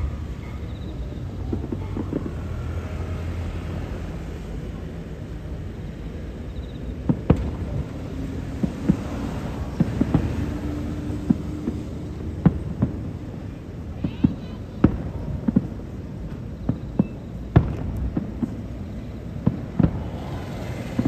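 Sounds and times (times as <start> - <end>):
fireworks rumbling: 0.0 - 21.0
sharp firework cracks: 7.0 - 16.0, 16.6 - 21.0.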